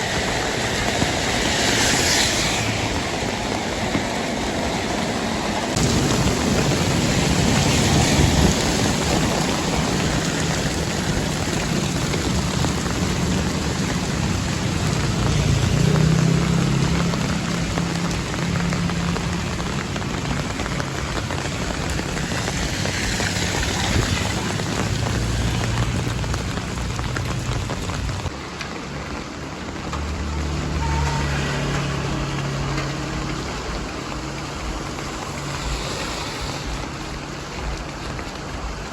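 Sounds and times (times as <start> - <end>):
rushing water: 0.0 - 38.9
vehicle engines passing: 0.0 - 38.9.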